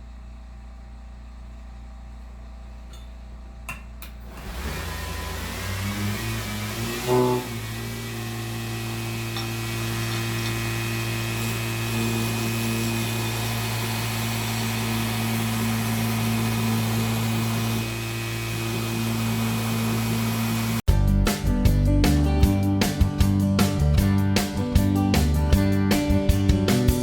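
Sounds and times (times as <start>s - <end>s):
electric machine tool motor hum: 4.2s - 20.8s.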